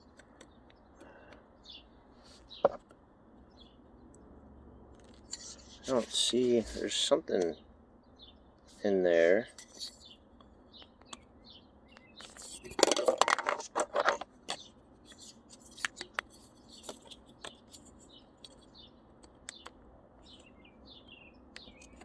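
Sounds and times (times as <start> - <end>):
birds chirping: 0.0 - 22.0
plastic parts clicking and rattling: 12.2 - 17.8.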